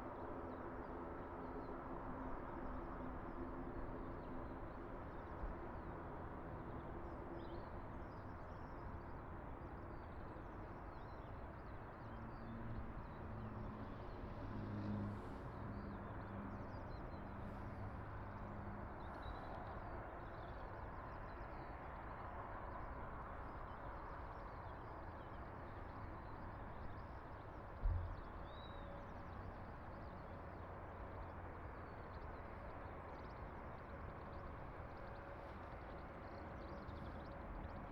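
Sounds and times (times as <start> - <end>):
distant aircraft engines droning: 12.8 - 37.9.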